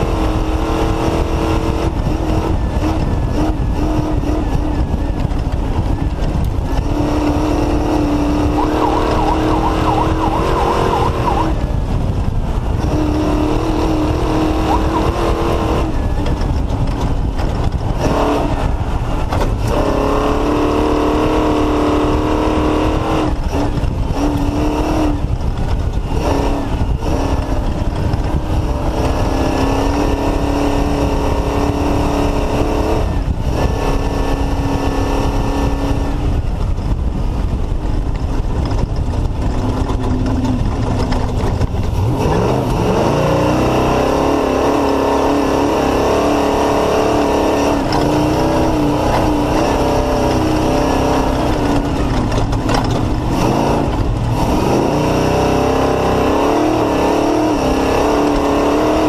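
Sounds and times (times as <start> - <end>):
race car engine revving: 0.0 - 36.7, 37.5 - 59.0
rough low noise: 37.2 - 55.0.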